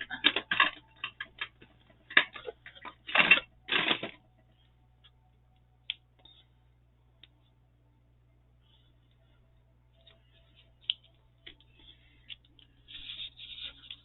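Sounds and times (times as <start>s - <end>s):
craft materials rustling and scraping: 11.6s - 14.0s.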